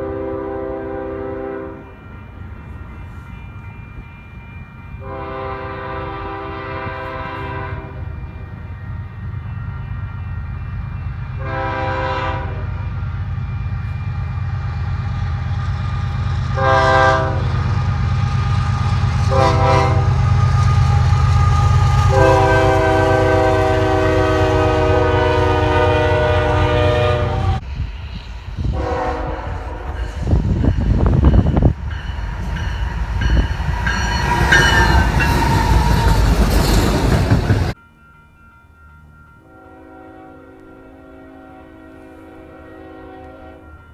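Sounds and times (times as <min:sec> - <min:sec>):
locomotive air horn blasts: 0:00.0 - 0:01.9, 0:05.0 - 0:08.1, 0:11.4 - 0:12.9, 0:16.5 - 0:17.7, 0:19.2 - 0:27.6, 0:28.7 - 0:30.0, 0:39.4 - 0:43.8
diesel locomotive engine rumbling: 0:00.0 - 0:43.9
train wheels clattering on rails: 0:28.0 - 0:37.8.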